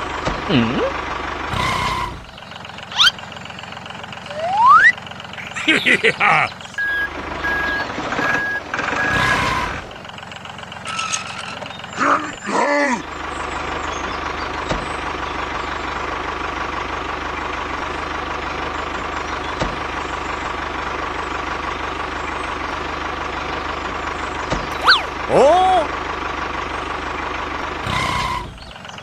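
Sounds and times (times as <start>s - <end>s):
engine drone with low pulse: 0.0s - 29.0s
reversing beeps: 4.3s - 5.0s, 6.8s - 9.8s.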